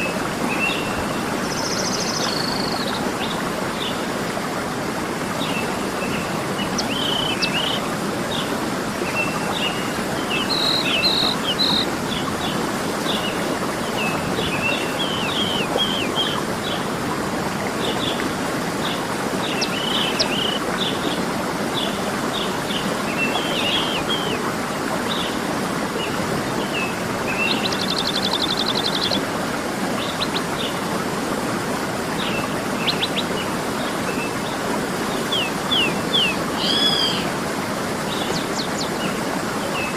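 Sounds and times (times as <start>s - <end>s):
waterfall rushing: 0.0s - 39.9s
birds chirping and whistling: 35.3s - 37.2s.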